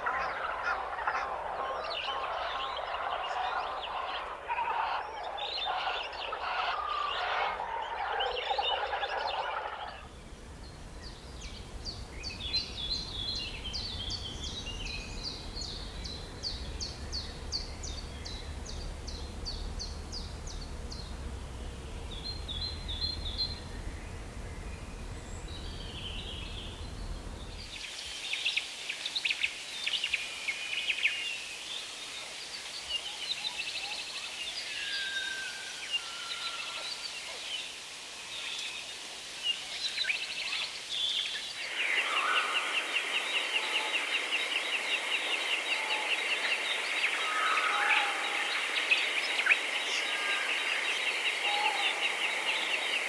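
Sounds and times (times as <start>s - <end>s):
high bird calls: 0.0s - 10.1s
high rapidly repeated birdsong: 0.0s - 21.3s
dense bird chatter: 0.0s - 34.8s, 38.3s - 53.0s
low background rumble: 10.0s - 27.8s.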